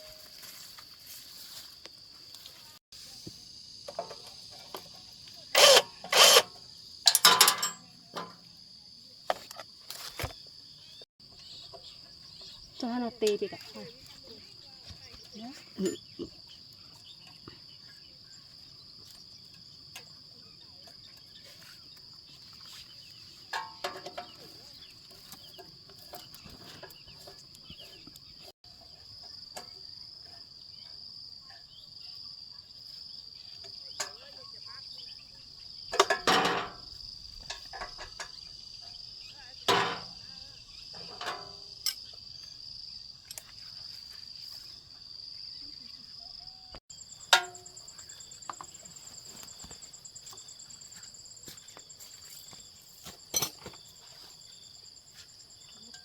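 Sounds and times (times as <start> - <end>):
metal knocking and clattering: 7.1 - 8.4, 36.0 - 36.8, 47.3 - 48.8.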